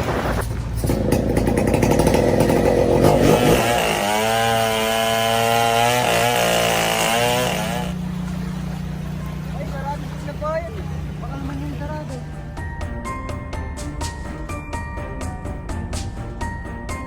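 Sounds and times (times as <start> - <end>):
small engine running rough: 0.1 - 12.3.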